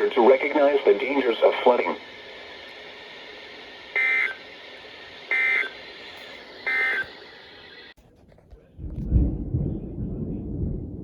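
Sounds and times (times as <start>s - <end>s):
steady radio hiss: 0.0s - 8.8s
digital data tone bursts: 4.0s - 4.4s, 5.3s - 5.8s, 6.6s - 7.1s.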